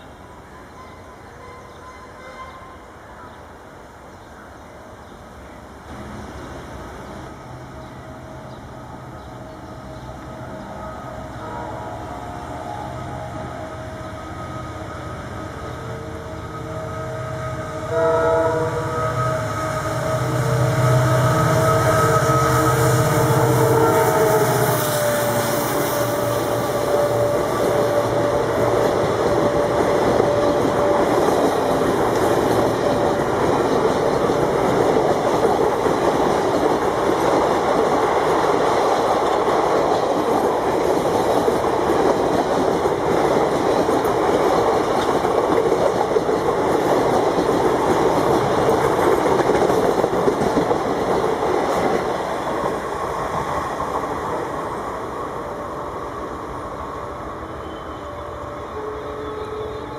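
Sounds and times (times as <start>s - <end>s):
locomotive horn: 0.6s - 3.0s, 10.4s - 31.9s, 57.4s - 59.9s
train wheels clattering on rails: 19.2s - 54.9s.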